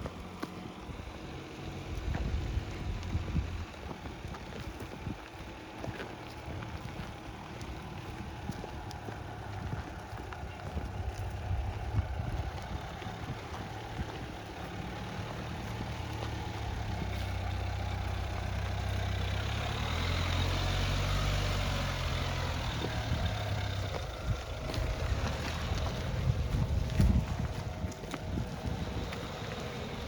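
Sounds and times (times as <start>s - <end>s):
diesel engine running at low revs: 0.0s - 30.0s.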